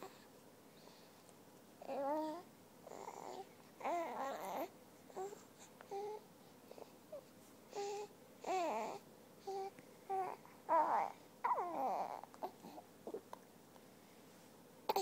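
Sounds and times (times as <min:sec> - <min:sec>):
baby cooing: 0:01.8 - 0:13.3.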